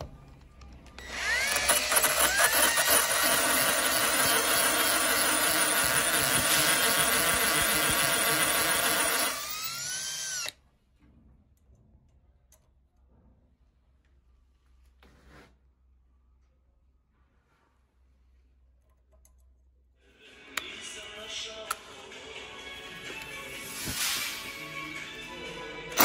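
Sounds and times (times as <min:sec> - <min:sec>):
electric impact drill running: 0:01.0 - 0:10.6.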